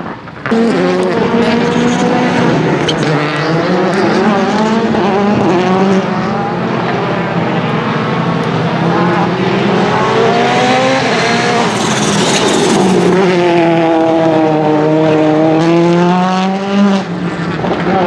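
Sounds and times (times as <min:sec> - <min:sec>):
rally car engine revving: 0:11.5 - 0:15.8.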